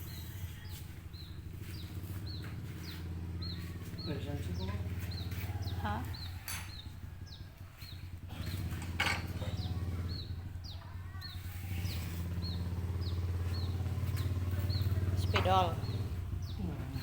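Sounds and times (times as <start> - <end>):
small bird chirping: 0.0 - 17.0.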